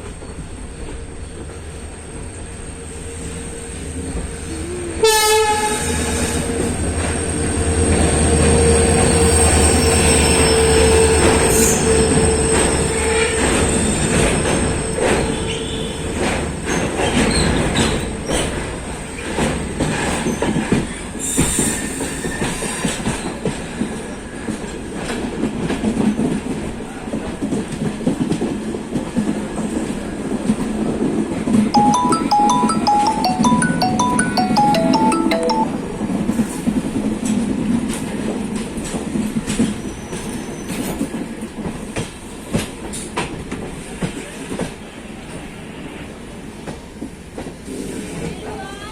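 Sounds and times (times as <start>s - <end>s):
train horn: 5.0s - 6.4s.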